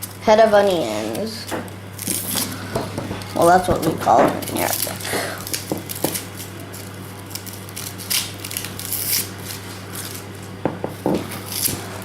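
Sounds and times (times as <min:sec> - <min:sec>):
steady low hum: 0:00.0 - 0:12.0
crisp rustles: 0:04.4 - 0:10.4.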